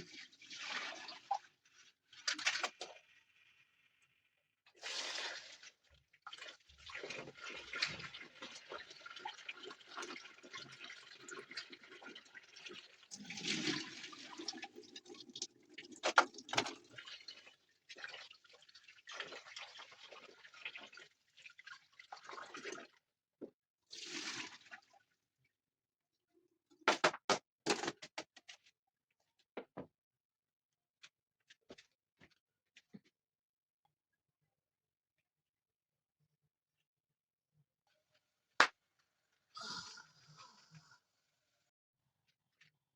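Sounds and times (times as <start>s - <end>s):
water pouring and splashing: 0.0s - 3.3s, 4.7s - 23.1s, 23.9s - 25.2s.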